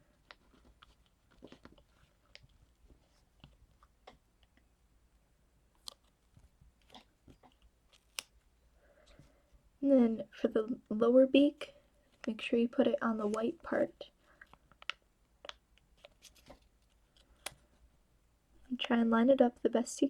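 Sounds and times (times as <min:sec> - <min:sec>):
paper rustling: 0:00.0 - 0:04.2, 0:15.9 - 0:17.8
stickers peeled and pressed: 0:06.8 - 0:08.4.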